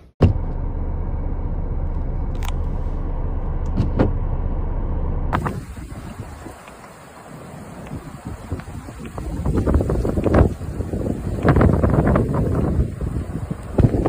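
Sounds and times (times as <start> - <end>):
vehicle low rumble: 0.0 - 14.0
wind noise on microphone: 5.4 - 14.0.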